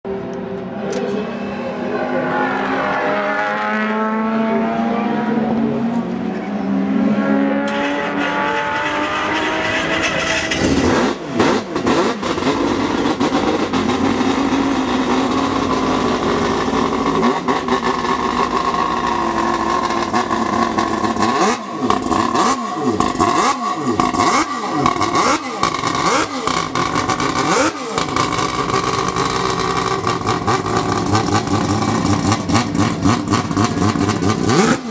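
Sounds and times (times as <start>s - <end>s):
rotary engine revving: 2.2s - 34.9s
engine crackling: 7.6s - 34.9s.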